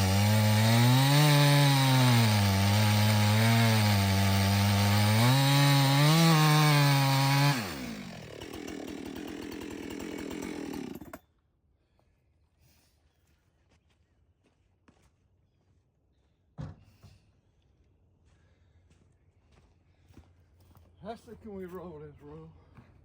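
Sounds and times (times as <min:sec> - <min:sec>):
chainsaw cutting log: 0:00.0 - 0:11.2.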